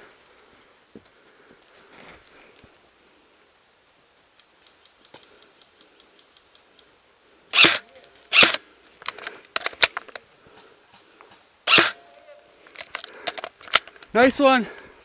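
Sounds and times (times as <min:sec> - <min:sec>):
faint sharp cracks and clicks: 0:04.3 - 0:06.9, 0:07.6 - 0:14.3
airsoft gun shots: 0:07.5 - 0:08.6, 0:11.7 - 0:12.1.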